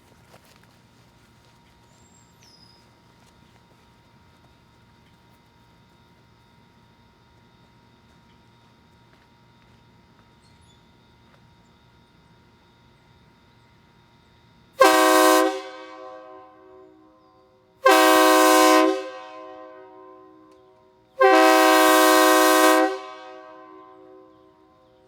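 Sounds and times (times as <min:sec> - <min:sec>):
train horn blasts: 0:14.8 - 0:25.0.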